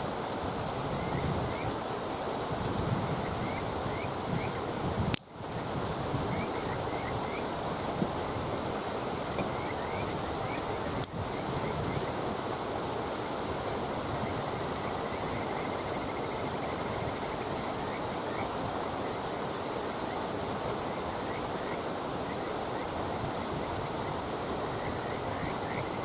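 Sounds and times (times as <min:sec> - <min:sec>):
running water rushing: 0:00.0 - 0:26.0
frogs chirping: 0:00.8 - 0:01.8, 0:03.1 - 0:04.8, 0:06.2 - 0:08.6, 0:09.2 - 0:12.3, 0:13.8 - 0:26.0.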